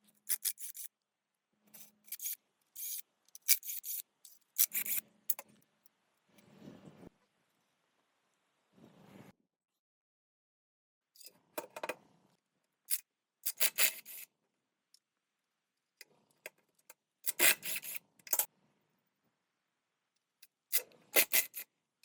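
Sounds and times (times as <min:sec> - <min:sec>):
filing on metal: 0:00.3 - 0:00.9, 0:01.8 - 0:04.0, 0:04.6 - 0:05.0, 0:17.3 - 0:18.5, 0:20.7 - 0:21.6.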